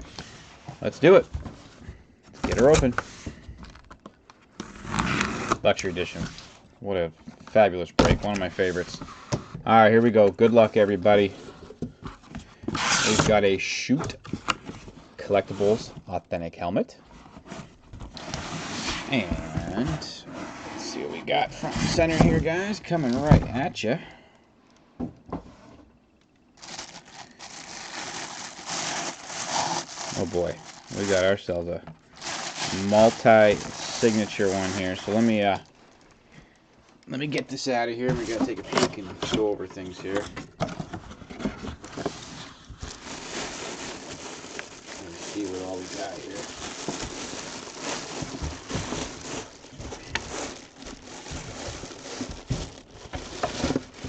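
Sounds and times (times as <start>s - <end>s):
cardboard packaging rustling: 0.0s - 6.7s, 17.1s - 23.4s, 26.6s - 54.0s.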